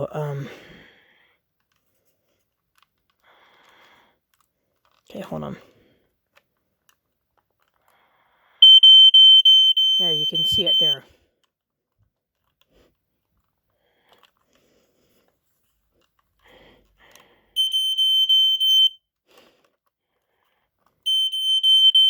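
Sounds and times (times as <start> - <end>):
handling clicks and rustles: 1.6 - 8.0, 8.6 - 18.8
smoke detector horn tone: 8.6 - 11.0, 17.6 - 19.0, 21.1 - 22.0.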